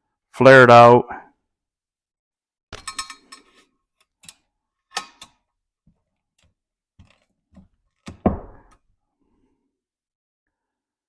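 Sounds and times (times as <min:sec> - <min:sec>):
clicks and knocks of handling: 0:06.4 - 0:08.2.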